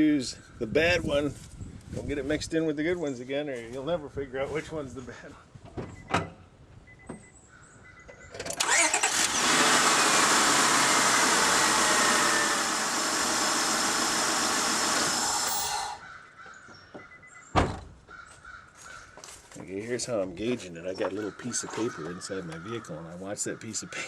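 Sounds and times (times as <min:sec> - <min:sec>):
car engine cranking and idling: 0:07.9 - 0:16.0.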